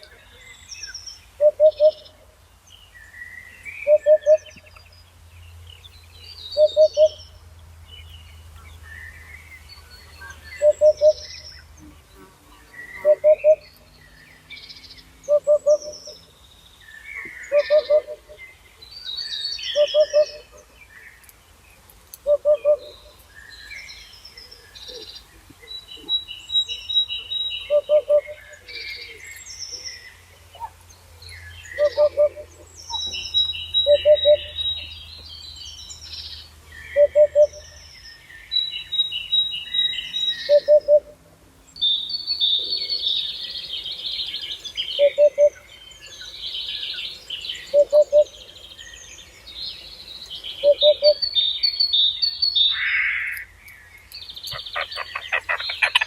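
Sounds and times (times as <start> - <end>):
songbird chirps and trills: 0.0 - 56.0
low hooting bird call: 1.4 - 2.3, 3.7 - 4.8, 6.6 - 7.3, 10.2 - 11.6, 12.8 - 13.8, 15.2 - 16.2, 17.2 - 18.5, 19.5 - 20.7, 22.2 - 23.2, 27.1 - 29.4, 31.6 - 35.0, 36.8 - 37.8, 38.9 - 41.2, 42.4 - 48.8, 50.5 - 53.5, 54.5 - 56.0.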